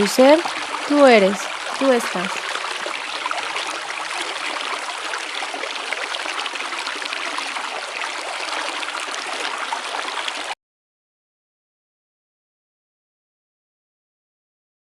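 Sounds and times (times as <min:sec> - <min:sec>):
stream water flowing: 0:00.0 - 0:10.6.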